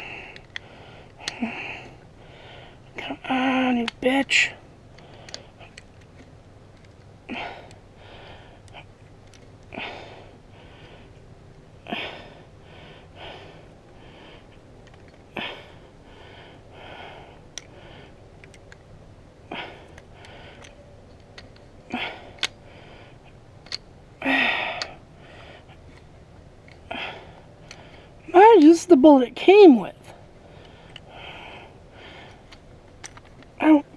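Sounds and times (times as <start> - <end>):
person breathing hard: 0.0 - 3.0, 4.6 - 5.8, 7.2 - 9.0, 9.7 - 11.2, 11.8 - 18.4, 19.4 - 20.9, 21.8 - 23.4, 24.2 - 26.1, 26.7 - 28.3, 30.1 - 33.9.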